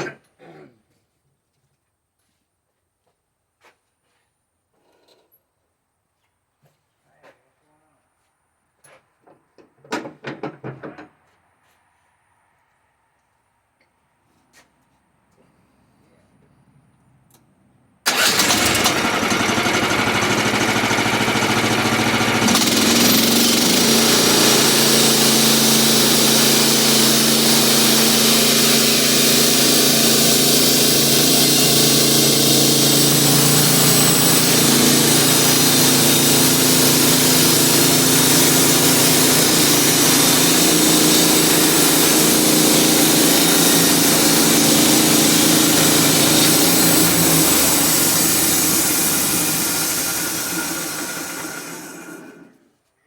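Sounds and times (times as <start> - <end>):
sawmill gas engine running: 18.1 - 52.6.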